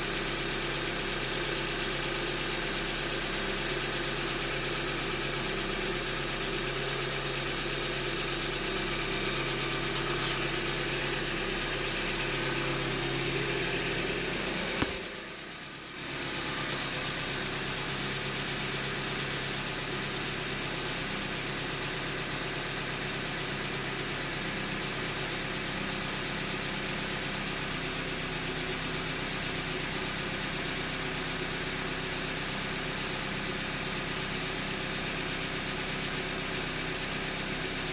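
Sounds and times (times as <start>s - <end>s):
car engine idling with knock: 0.0s - 37.9s
sharp click: 14.7s - 15.1s.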